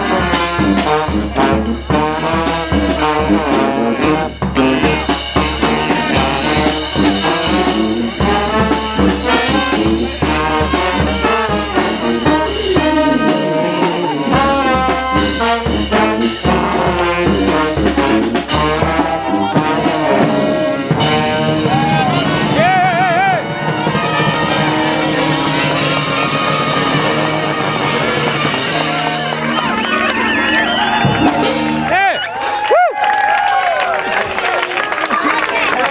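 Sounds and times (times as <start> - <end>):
bass drum beat: 0.0 - 32.2
trombones and trumpets: 0.0 - 32.8.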